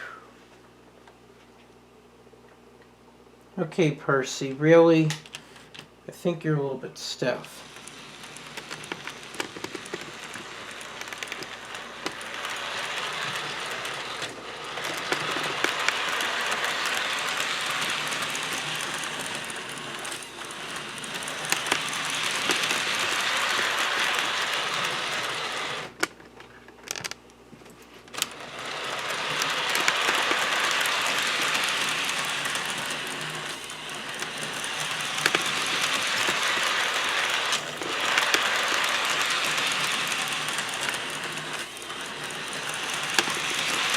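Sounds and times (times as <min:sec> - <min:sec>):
model train motor whirring: 0:07.0 - 0:26.1, 0:28.1 - 0:43.9
wheels clicking over rail joints: 0:07.2 - 0:26.1, 0:28.1 - 0:43.9.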